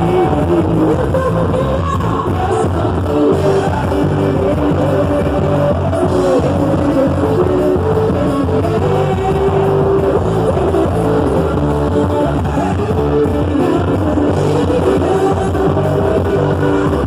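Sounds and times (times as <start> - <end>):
dance music with steady beat: 0.0 - 17.0.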